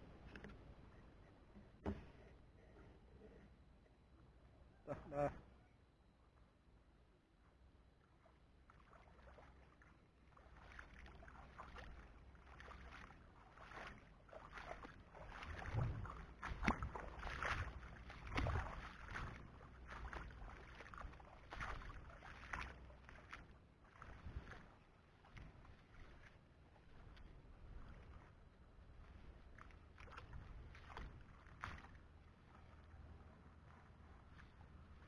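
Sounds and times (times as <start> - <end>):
shallow water splashing: 8.0 - 35.0.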